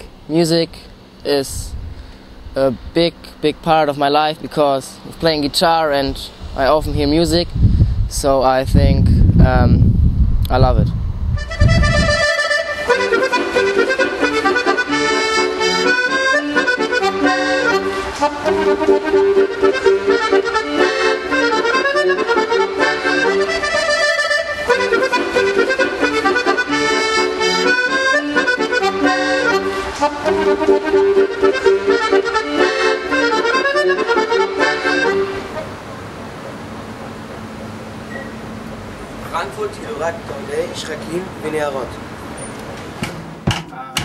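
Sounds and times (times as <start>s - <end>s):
accordion melody with chords: 11.3s - 39.0s.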